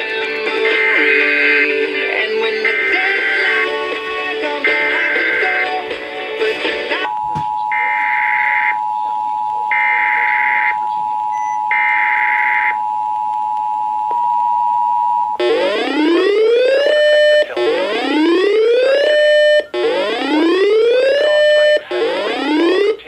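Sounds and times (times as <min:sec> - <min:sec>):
two-tone attention signal: 0:07.1 - 0:23.0
synthetic siren-like whoop: 0:09.7 - 0:10.8, 0:11.7 - 0:12.8, 0:15.4 - 0:23.0.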